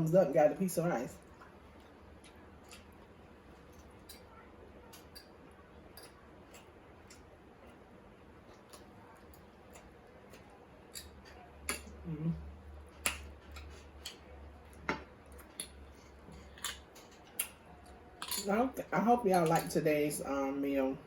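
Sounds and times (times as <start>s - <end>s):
chewing and mouth sounds: 1.2s - 18.5s
person humming: 12.0s - 12.5s.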